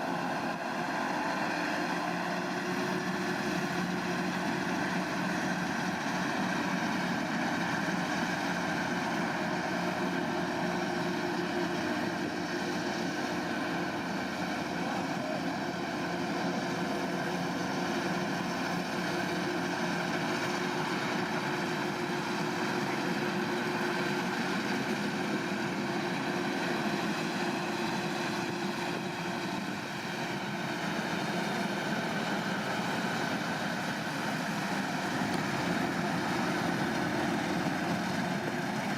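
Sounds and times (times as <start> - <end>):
combine harvester engine drone: 0.0 - 38.9.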